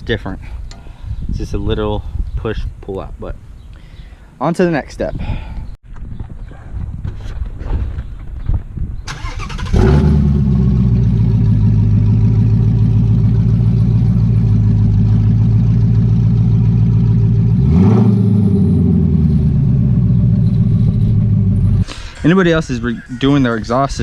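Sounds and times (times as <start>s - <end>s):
car engine starting and idling: 9.1s - 23.8s.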